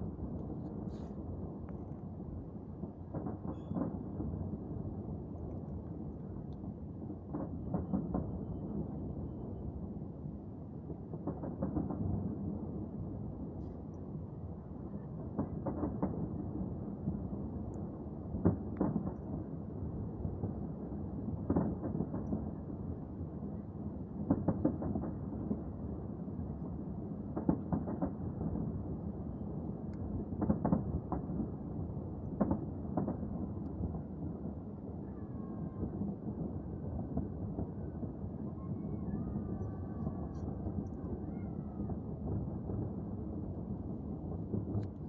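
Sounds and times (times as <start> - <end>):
distant fireworks booms: 2.8 - 4.6, 7.2 - 8.9, 21.4 - 22.6, 24.2 - 25.7, 30.2 - 34.6, 35.8 - 45.0.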